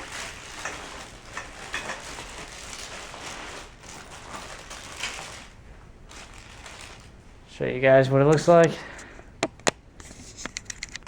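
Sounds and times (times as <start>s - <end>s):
fabric bag rustling: 0.0s - 7.5s.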